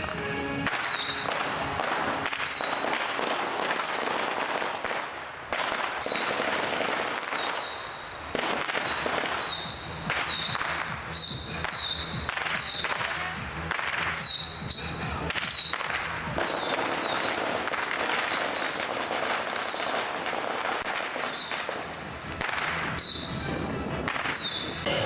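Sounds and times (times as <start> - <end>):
firecrackers exploding: 0.0 - 25.0
high-pitched whistles: 0.8 - 1.3, 9.4 - 12.8.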